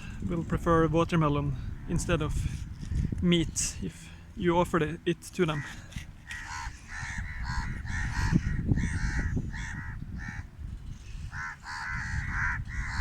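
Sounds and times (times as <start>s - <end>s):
birds calling harshly: 5.4s - 13.0s.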